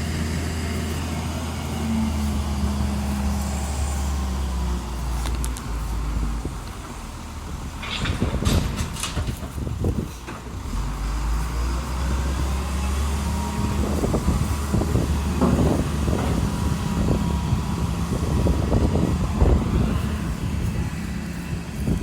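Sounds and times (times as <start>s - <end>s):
heavy vehicle engine humming: 0.0s - 22.0s
knocks and scrapes: 7.8s - 22.0s.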